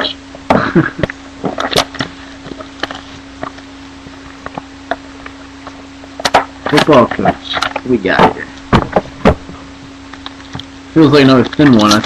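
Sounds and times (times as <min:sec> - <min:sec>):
wrapper crinkling: 0:10.2 - 0:12.0
card pack wrapper tearing: 0:11.3 - 0:12.0
cards being handled: 0:11.3 - 0:12.0.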